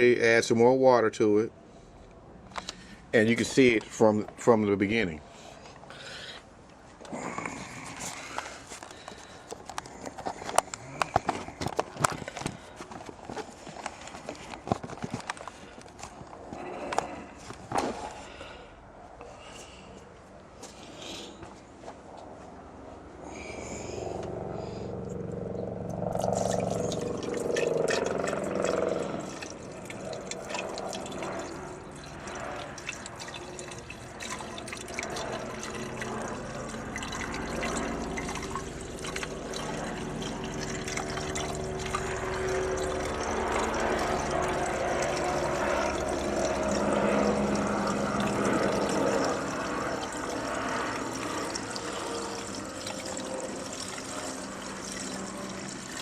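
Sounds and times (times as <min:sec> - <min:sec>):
water pouring into container: 0:26.1 - 0:56.0.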